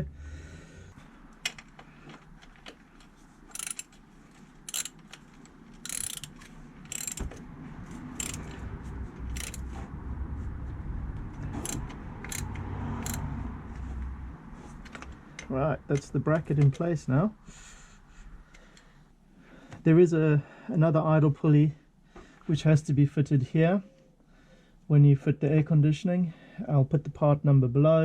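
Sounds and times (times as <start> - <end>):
tools clinking on metal: 3.5 - 4.0, 4.7 - 5.2, 5.8 - 7.3, 8.2 - 8.6, 9.4 - 9.6, 11.6 - 13.2.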